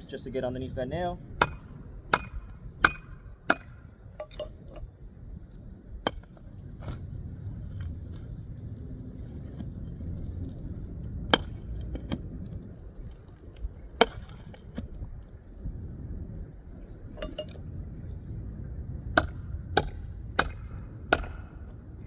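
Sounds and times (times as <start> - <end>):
low background rumble: 0.0 - 22.0.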